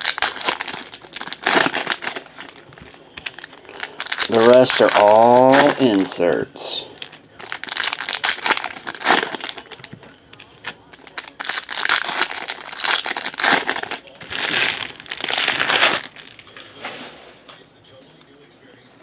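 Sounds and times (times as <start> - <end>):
wrapper tearing and crinkling: 0.0 - 6.3, 7.0 - 9.9, 10.6 - 16.4.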